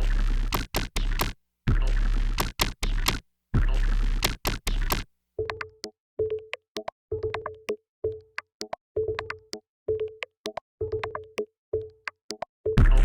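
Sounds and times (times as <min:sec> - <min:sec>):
deep bass drum hits: 0:12.8 - 0:13.0.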